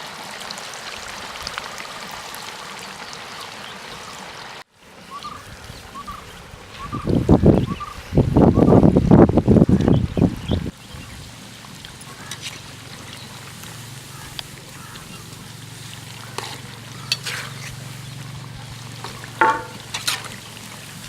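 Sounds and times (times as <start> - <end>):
food sizzling in hot oil: 10.7 - 21.0.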